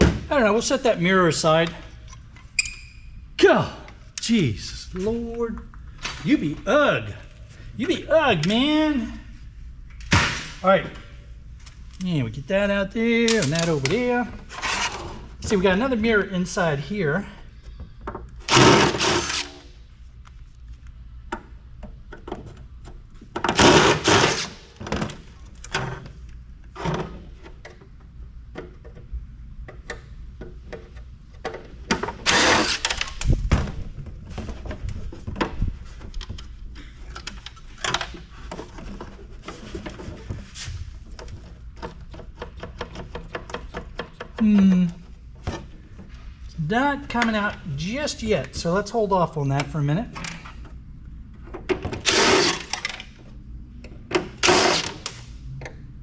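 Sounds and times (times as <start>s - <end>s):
loud noisy bursts: 18.5s - 19.5s, 32.2s - 32.9s, 52.0s - 52.7s.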